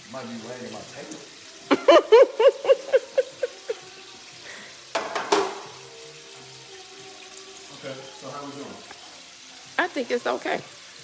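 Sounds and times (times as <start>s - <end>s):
fish frying in oil: 0.0s - 11.0s
person laughing: 1.7s - 3.9s
kitchen clatter: 4.9s - 5.9s.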